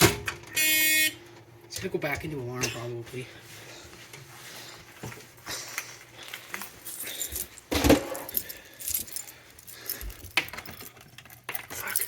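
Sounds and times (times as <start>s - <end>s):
small metal objects jingling: 6.8s - 12.0s.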